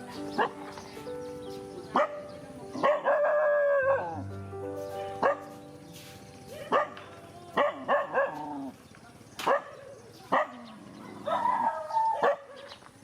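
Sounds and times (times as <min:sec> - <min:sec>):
dog barking: 0:01.9 - 0:04.2, 0:05.2 - 0:05.6, 0:06.6 - 0:08.7, 0:09.4 - 0:12.8.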